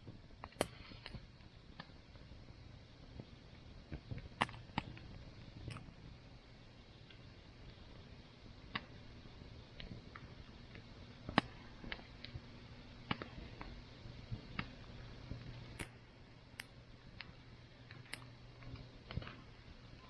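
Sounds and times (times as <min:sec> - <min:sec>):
campfire crackling: 0:00.0 - 0:20.0
faint low background noise: 0:00.0 - 0:20.0.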